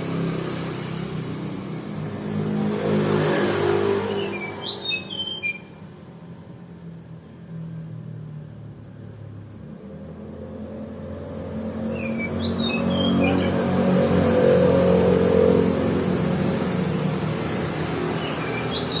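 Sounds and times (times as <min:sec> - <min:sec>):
bird whistling short notes: 0:04.1 - 0:05.7, 0:18.2 - 0:19.0.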